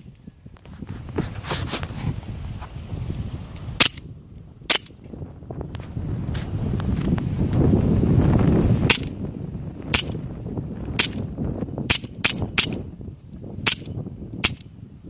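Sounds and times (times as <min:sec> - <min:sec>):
wind buffeting microphone: 0:00.0 - 0:15.0
airsoft pistol shots: 0:03.8 - 0:04.0, 0:04.7 - 0:05.0, 0:08.9 - 0:09.1, 0:09.9 - 0:10.2, 0:11.0 - 0:11.2, 0:11.9 - 0:12.8, 0:13.7 - 0:14.7.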